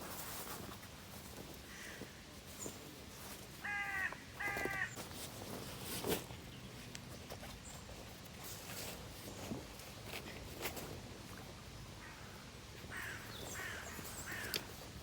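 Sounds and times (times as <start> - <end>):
bird cawing: 3.6 - 5.0, 12.0 - 14.7.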